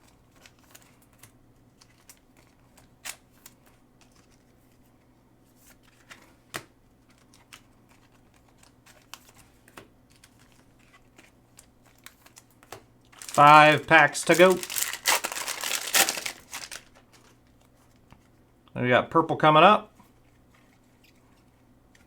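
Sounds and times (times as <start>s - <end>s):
trading cards flipped through: 8.9s - 17.4s.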